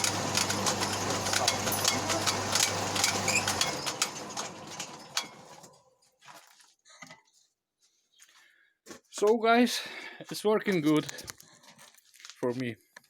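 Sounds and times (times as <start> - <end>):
motor hum: 0.0 - 5.2.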